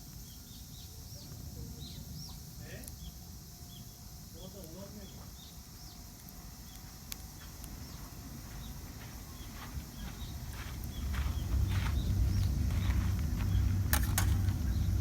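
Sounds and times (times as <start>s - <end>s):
small bird chirping: 0.1s - 15.0s
low rumble: 10.3s - 15.0s.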